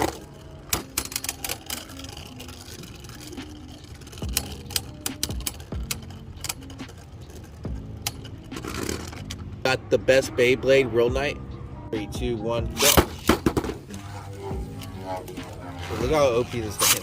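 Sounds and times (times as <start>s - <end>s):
spinning tops clicking and rattling: 0.0s - 9.5s
faint background music: 0.0s - 17.0s.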